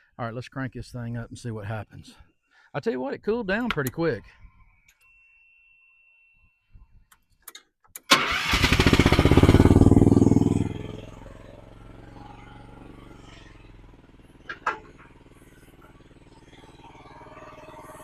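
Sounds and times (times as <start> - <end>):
sharp clicks: 3.6 - 4.0
excavator engine starting and idling: 7.9 - 18.0.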